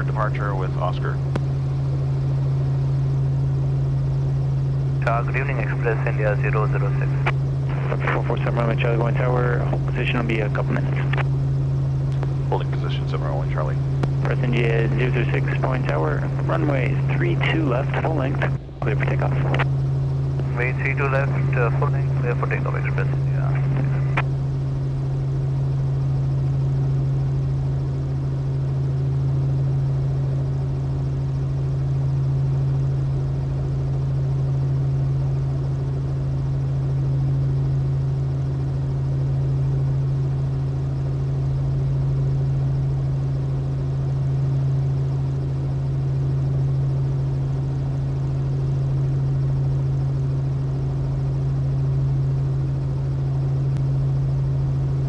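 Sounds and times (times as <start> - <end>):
helicopter engine and rotors: 0.0 - 55.0.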